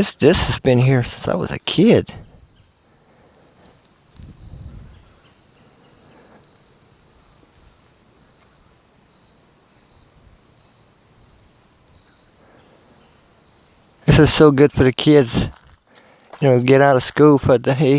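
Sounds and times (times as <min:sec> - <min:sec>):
insect chorus trilling: 0:00.0 - 0:17.9.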